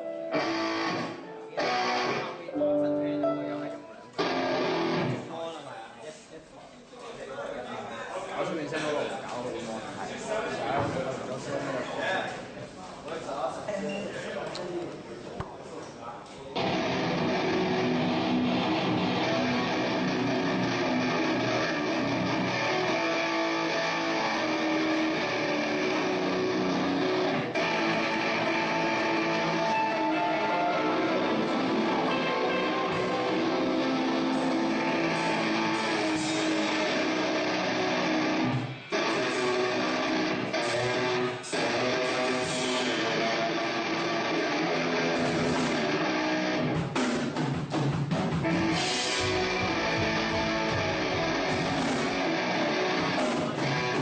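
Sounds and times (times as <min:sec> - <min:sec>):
amplified electric guitar: 0:00.0 - 0:05.3, 0:16.6 - 0:47.5, 0:48.1 - 0:54.0
bass guitar: 0:04.2 - 0:05.3, 0:16.6 - 0:54.0
drum kit playing: 0:16.6 - 0:54.0.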